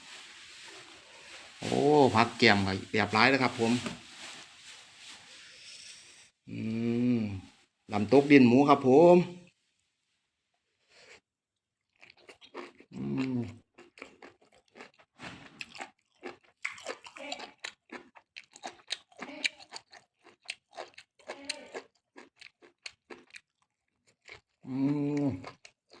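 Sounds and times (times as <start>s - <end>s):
person humming mmm: 6.5s - 7.5s, 13.0s - 13.6s, 24.6s - 25.5s
person chewing and crunching: 11.8s - 26.0s.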